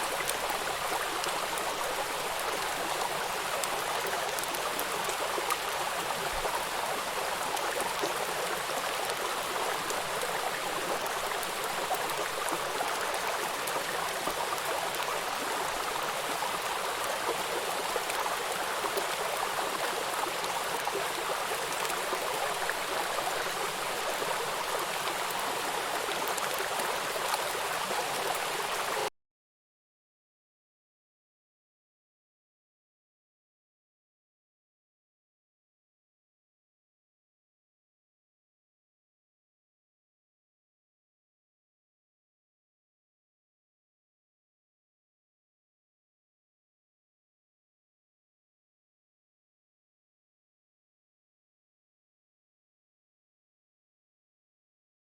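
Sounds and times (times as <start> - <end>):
stream water rushing: 0.0 - 29.1.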